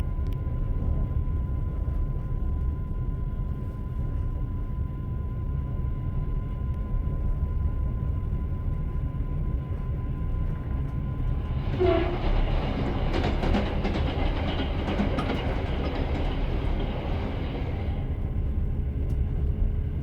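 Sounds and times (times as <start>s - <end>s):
train wheels rumbling on rails: 8.6s - 20.0s
wheels clicking and clattering: 11.3s - 18.0s.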